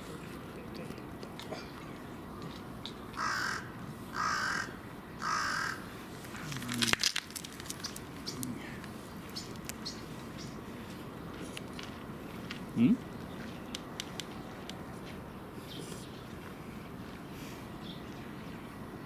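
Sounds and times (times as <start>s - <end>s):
crow cawing: 3.2s - 5.9s.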